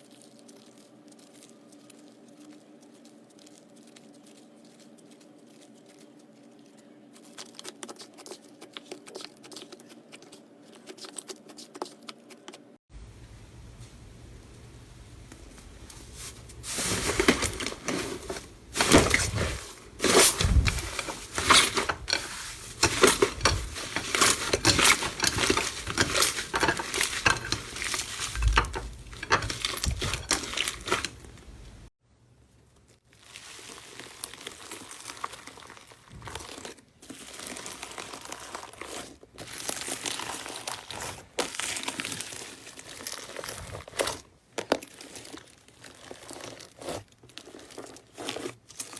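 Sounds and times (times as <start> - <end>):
slime crackling and popping: 33.2 - 48.9.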